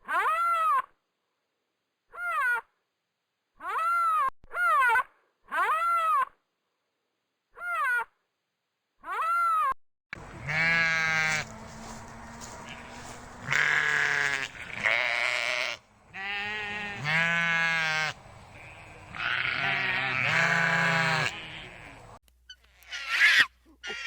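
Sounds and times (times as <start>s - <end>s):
farm animal bleating: 10.2s - 24.0s.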